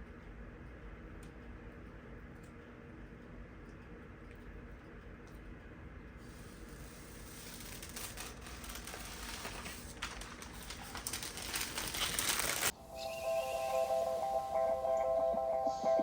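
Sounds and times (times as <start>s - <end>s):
crinkling and rustling: 7.5s - 12.7s
background music with held notes: 12.7s - 16.0s.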